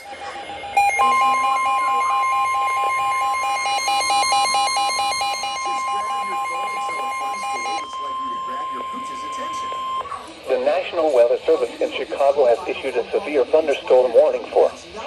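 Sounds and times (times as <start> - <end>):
rapidly pulsing low beep: 0.0 - 10.1
steady high alert tone: 0.0 - 12.3.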